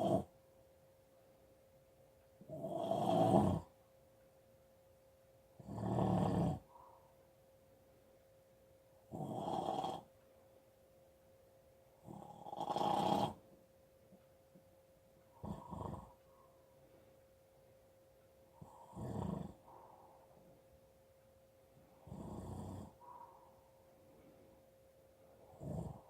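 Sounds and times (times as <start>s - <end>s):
person snoring: 0.0s - 0.3s, 2.5s - 3.7s, 5.6s - 6.7s, 9.1s - 10.1s, 12.0s - 13.4s, 15.4s - 16.2s, 18.6s - 19.7s, 22.0s - 23.0s, 25.5s - 26.0s.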